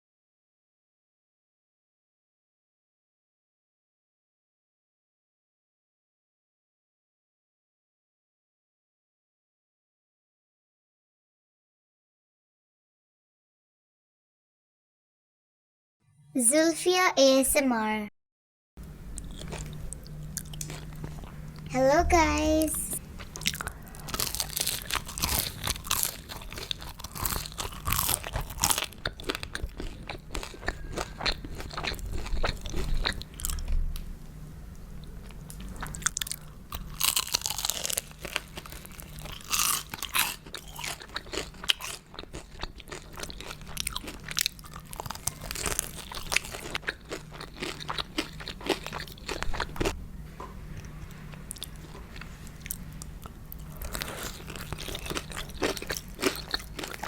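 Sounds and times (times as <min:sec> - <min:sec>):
crunchy food chewing: 0:18.8 - 0:21.7, 0:23.0 - 0:33.8, 0:35.0 - 0:50.0, 0:50.8 - 0:57.0.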